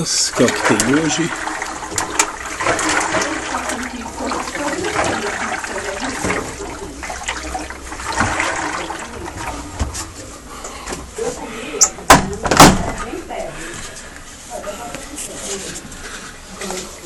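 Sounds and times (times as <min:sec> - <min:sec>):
water running and splashing: 0:00.0 - 0:11.2.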